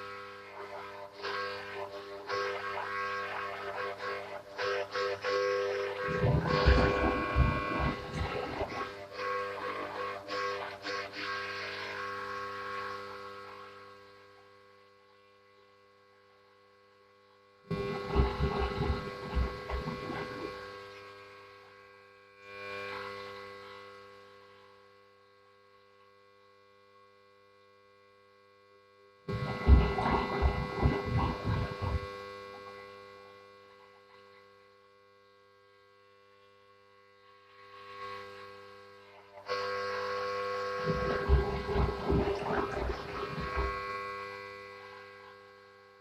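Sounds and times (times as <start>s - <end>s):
water pump humming with buzz: 0.0s - 46.0s
washing machine filling with water: 5.6s - 11.9s, 17.7s - 21.2s, 29.3s - 32.8s, 40.8s - 43.8s.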